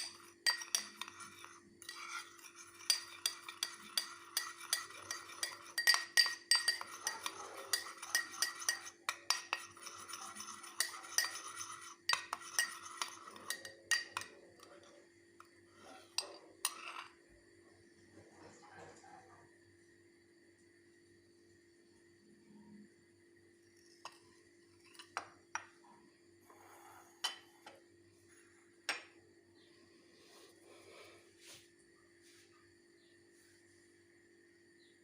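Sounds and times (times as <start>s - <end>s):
spoon clinking in a cup: 0.0s - 17.2s, 23.8s - 25.8s, 27.2s - 27.8s.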